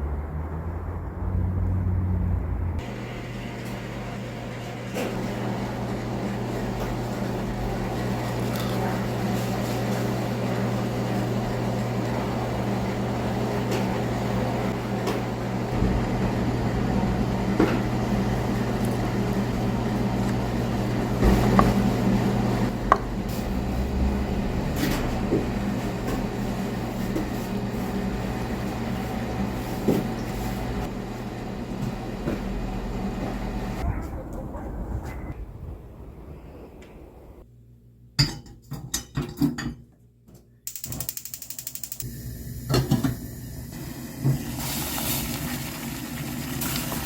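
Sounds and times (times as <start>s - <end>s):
low mechanical hum: 1.6s - 38.0s.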